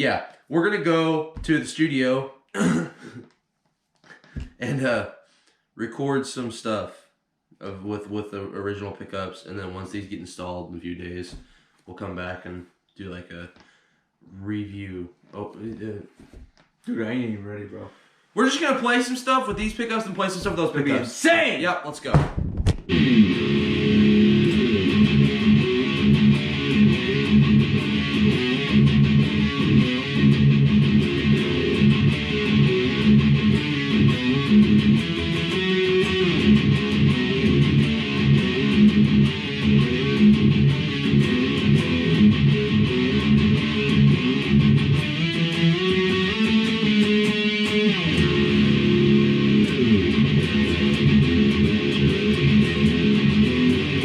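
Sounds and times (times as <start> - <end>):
electric guitar riffs through amp: 22.9 - 54.0.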